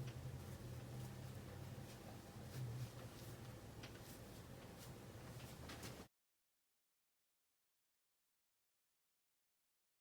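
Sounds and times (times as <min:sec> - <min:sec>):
faint low hum: 0:00.0 - 0:06.1.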